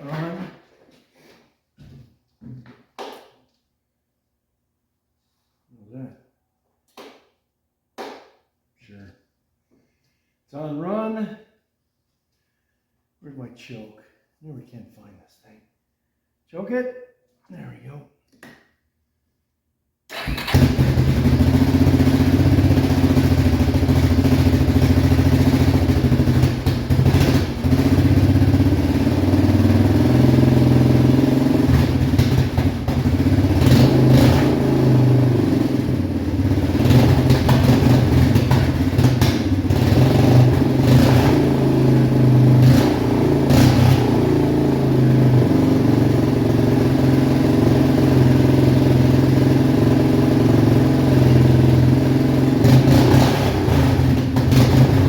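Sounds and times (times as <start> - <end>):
atv engine running: 20.1 - 55.0.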